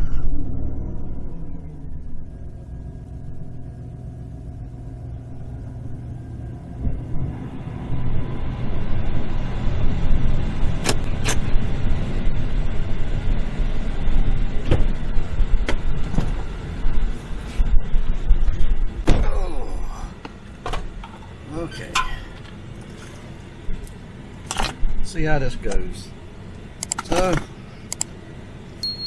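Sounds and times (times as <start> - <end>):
pickup truck engine running: 0.0 - 28.8.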